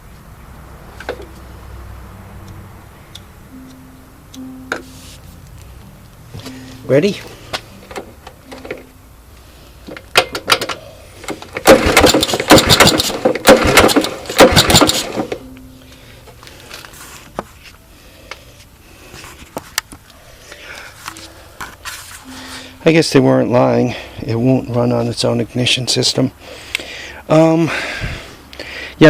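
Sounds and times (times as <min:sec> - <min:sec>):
engine turning over on pull starter: 0:09.9 - 0:15.4.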